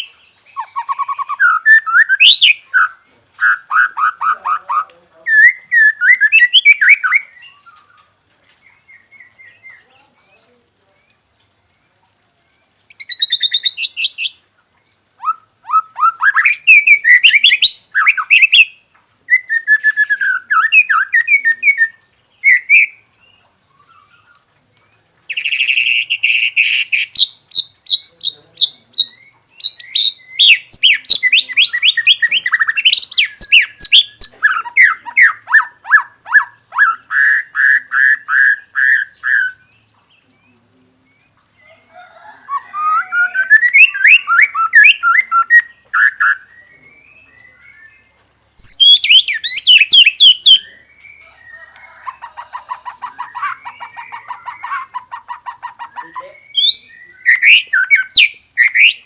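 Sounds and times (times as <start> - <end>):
bird whistles and trills: 19.3 - 23.0, 42.7 - 50.6, 51.5 - 59.0.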